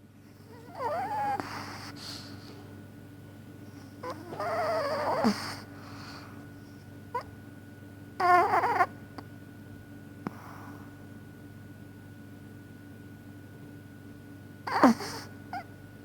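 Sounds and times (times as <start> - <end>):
dog snoring squeakily: 0.4 - 2.3, 3.9 - 6.2, 8.2 - 9.0, 14.7 - 15.7.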